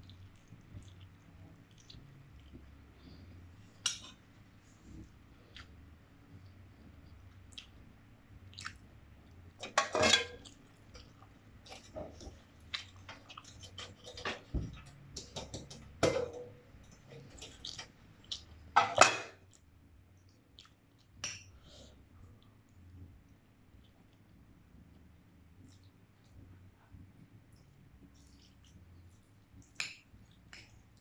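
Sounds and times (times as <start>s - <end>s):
cutlery clinking against bowl: 9.6s - 10.4s, 18.8s - 19.4s.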